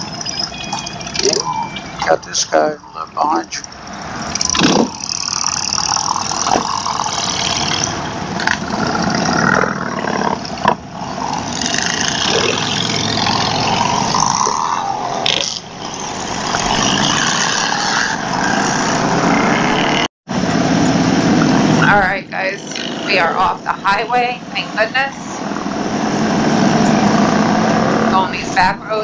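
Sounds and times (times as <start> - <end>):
motorcycle engine drone: 0.0 - 29.0
wind and road noise: 0.0 - 29.0.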